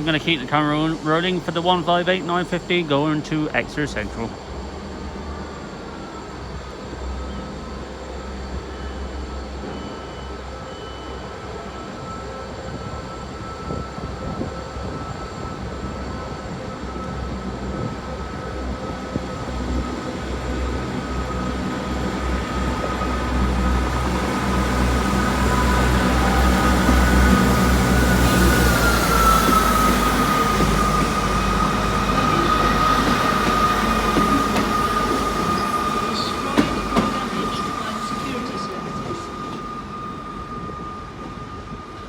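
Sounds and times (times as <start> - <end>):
rising steady whine: 0.0 - 42.0
train diesel engines rumbling: 0.0 - 42.0.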